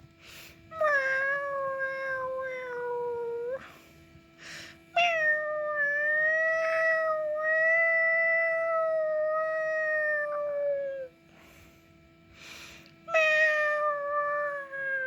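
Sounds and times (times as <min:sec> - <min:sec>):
cat yowling: 0:00.8 - 0:03.6, 0:05.0 - 0:11.1, 0:13.1 - 0:15.0.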